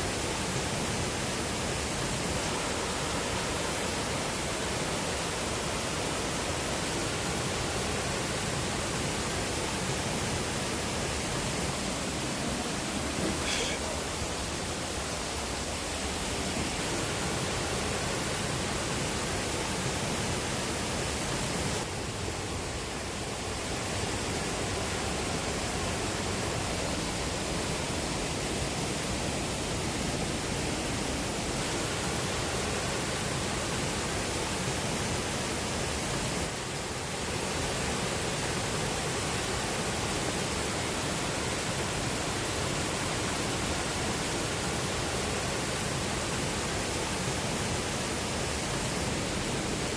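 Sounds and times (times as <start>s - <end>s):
waterfall and stream rushing: 0.0s - 49.9s.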